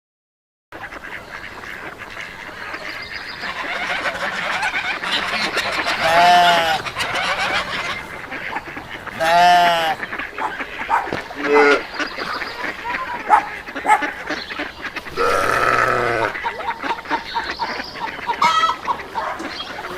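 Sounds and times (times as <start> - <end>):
geese honking: 0.8 - 19.9
loud single goose honks: 5.1 - 19.7.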